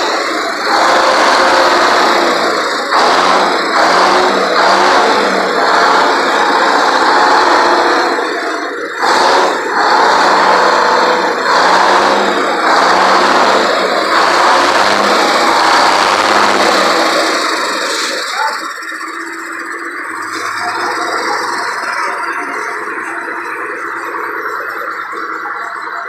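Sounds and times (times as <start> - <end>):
two-stroke diesel engine running: 0.0 - 26.0.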